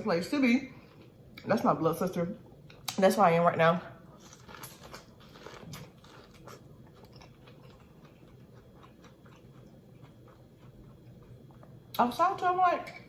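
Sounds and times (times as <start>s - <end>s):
person chewing food: 4.1s - 12.0s.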